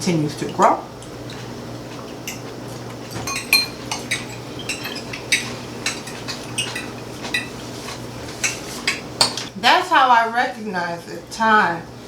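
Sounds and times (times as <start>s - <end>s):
cutlery clinking on plates: 3.1s - 9.5s.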